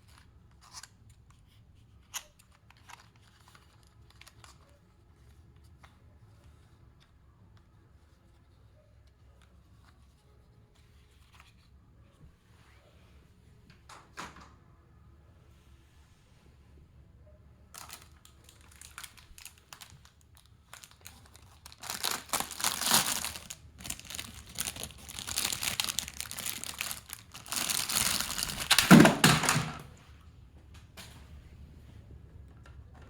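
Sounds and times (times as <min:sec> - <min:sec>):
packaging crinkling and tearing: 0:17.8 - 0:29.8.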